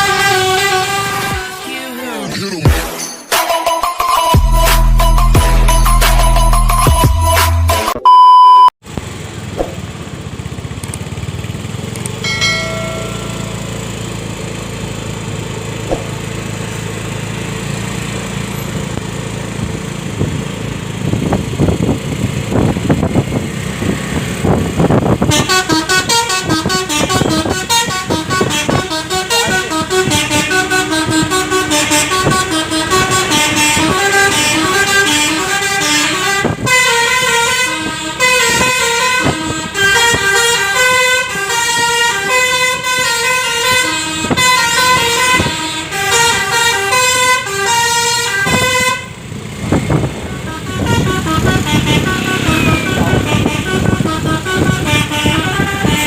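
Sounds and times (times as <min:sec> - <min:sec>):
musical air horn melody: 0:00.0 - 0:01.8, 0:25.2 - 0:49.2, 0:50.2 - 0:56.0
bus engine and road noise: 0:00.0 - 0:02.7, 0:04.3 - 0:56.0.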